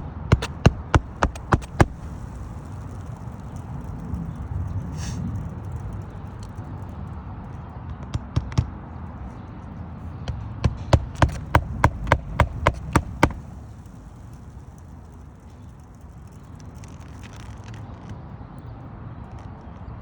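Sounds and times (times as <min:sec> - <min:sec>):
hammer blows on a roof: 0:00.0 - 0:04.0, 0:10.2 - 0:14.3
outdoor background hum: 0:00.0 - 0:20.0.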